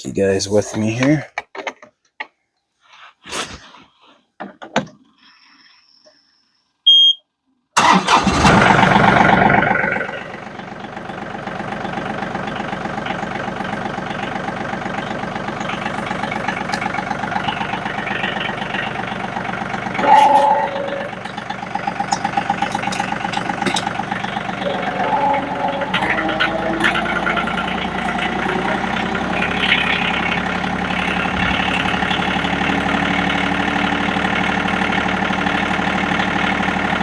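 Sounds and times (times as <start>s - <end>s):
short beep: 6.9s - 7.2s, 20.0s - 21.2s
engine starting and idling: 7.8s - 37.0s.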